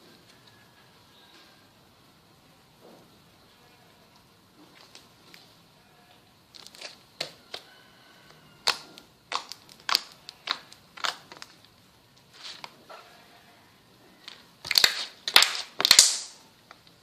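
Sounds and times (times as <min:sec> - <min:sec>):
slime popping and clicking: 0:08.6 - 0:11.5, 0:14.6 - 0:16.4.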